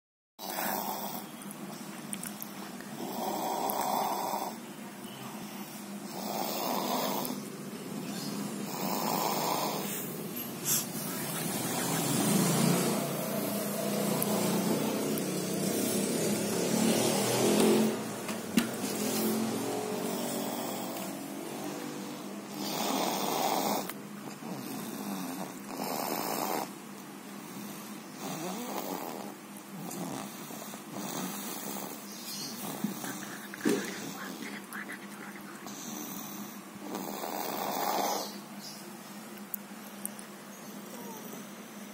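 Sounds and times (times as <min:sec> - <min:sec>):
child snoring: 0:00.4 - 0:01.3, 0:03.0 - 0:04.6, 0:06.1 - 0:07.5, 0:08.6 - 0:18.0, 0:19.0 - 0:26.8, 0:27.4 - 0:38.5, 0:40.9 - 0:41.6.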